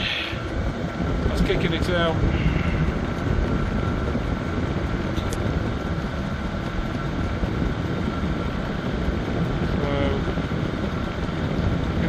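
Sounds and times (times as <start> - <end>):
heater fan and burner whirring: 0.0 - 12.0.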